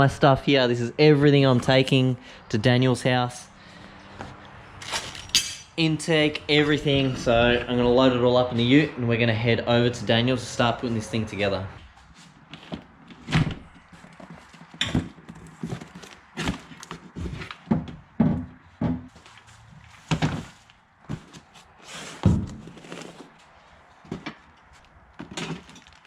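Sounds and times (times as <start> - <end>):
parts and boxes knocking down: 4.8 - 5.7, 14.7 - 19.1, 20.1 - 20.6.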